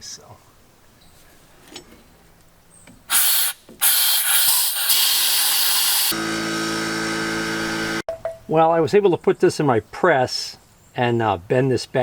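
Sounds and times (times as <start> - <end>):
pressurised spray hissing: 3.1 - 6.2.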